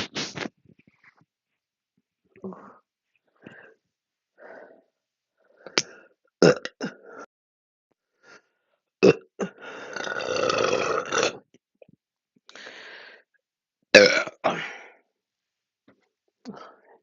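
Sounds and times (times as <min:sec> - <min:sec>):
woman burping: 0:06.4 - 0:07.0, 0:09.0 - 0:11.4, 0:14.0 - 0:14.7.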